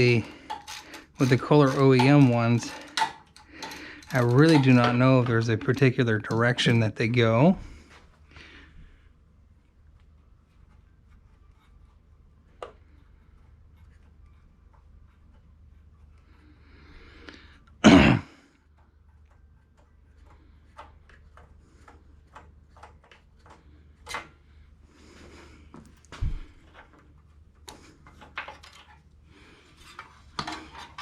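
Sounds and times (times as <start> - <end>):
light clicks and taps of tools: 18.5 - 24.4.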